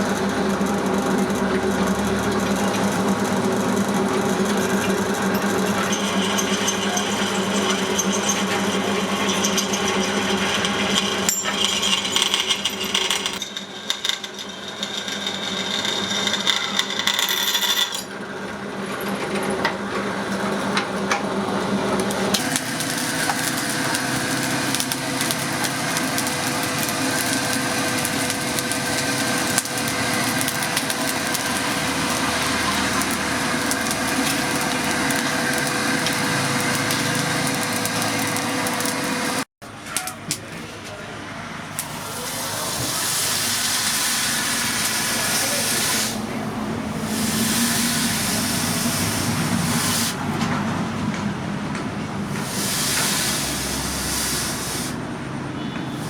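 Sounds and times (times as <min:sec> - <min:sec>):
electric power tool running: 0:21.9 - 0:39.5.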